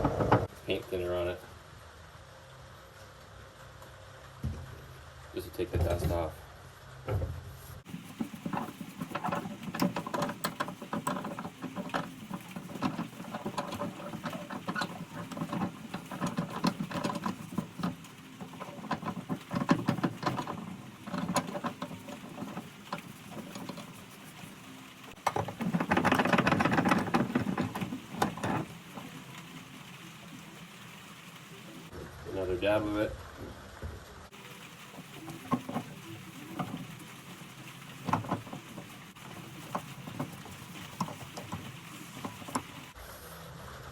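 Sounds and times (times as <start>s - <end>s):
rag rubbing on metal: 7.8s - 31.6s, 34.4s - 43.0s
small clicks and knocks: 7.9s - 29.6s, 34.9s - 43.0s.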